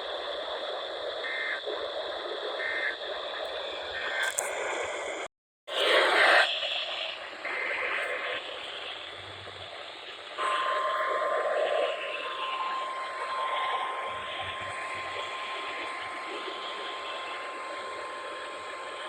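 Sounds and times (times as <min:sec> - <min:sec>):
radio static hiss: 0:00.0 - 0:19.0
steady high tone: 0:10.4 - 0:19.0.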